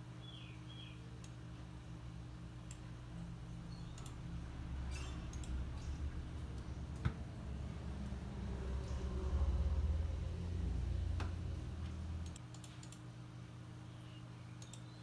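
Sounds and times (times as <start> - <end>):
steady low hum: 0.0 - 15.0
light clicks: 4.0 - 4.2, 5.3 - 5.6, 12.2 - 13.0, 14.6 - 14.9.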